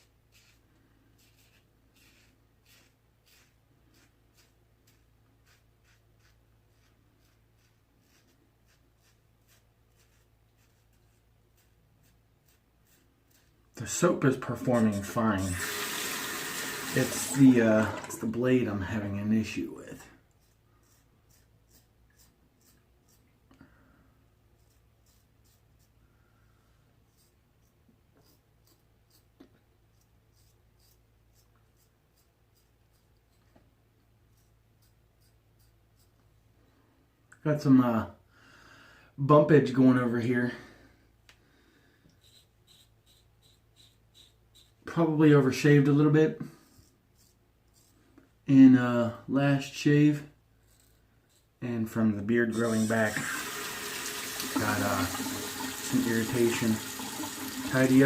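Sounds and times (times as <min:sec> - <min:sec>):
razor scraping stubble: 0:00.0 - 0:19.6, 0:20.3 - 0:23.3, 0:24.6 - 0:26.0, 0:27.1 - 0:33.6, 0:34.3 - 0:36.2, 0:42.2 - 0:45.8, 0:46.6 - 0:48.2, 0:50.6 - 0:58.0.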